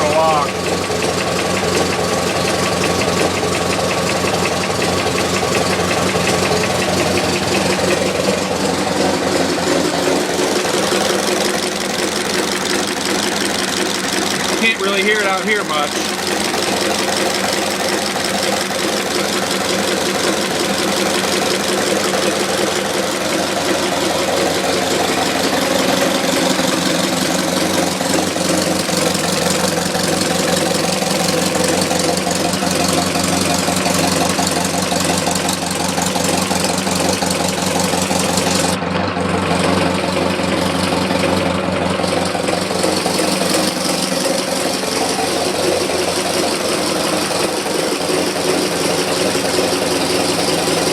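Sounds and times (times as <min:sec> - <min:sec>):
car engine idling: 0:00.0 - 0:50.9
light regular engine knock: 0:00.3 - 0:38.8.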